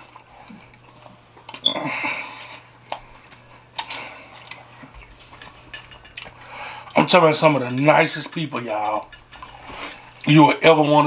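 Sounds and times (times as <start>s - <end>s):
chewing and wet mouth clicks: 3.8s - 4.7s.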